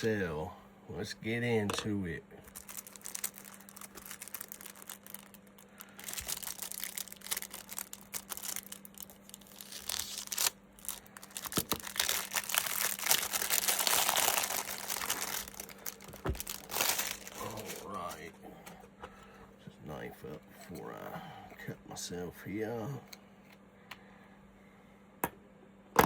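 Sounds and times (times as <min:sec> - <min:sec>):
wrapping material crinkling and tearing: 0:02.4 - 0:18.3.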